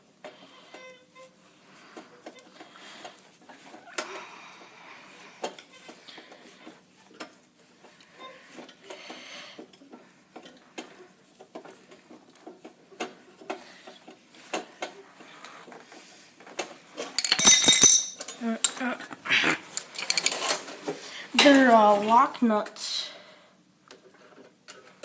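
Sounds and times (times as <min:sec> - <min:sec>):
wrench scraping: 0:19.7 - 0:20.7.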